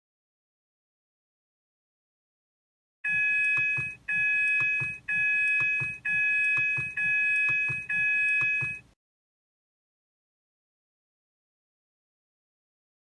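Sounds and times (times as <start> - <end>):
two-tone electronic chime: 3.1 - 8.9.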